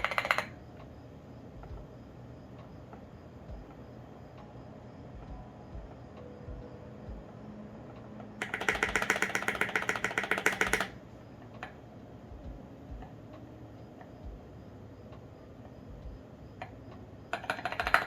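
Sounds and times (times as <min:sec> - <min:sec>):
mechanical keyboard typing: 0:00.0 - 0:00.5, 0:08.4 - 0:11.0, 0:17.4 - 0:18.0.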